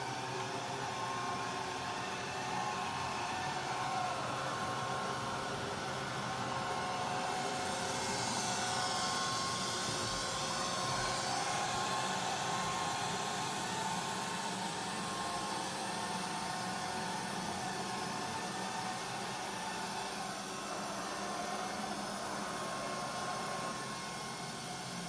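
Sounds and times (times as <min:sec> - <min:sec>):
high motor whine: 0:03.5 - 0:25.0
robot vacuum whirring: 0:06.1 - 0:25.0.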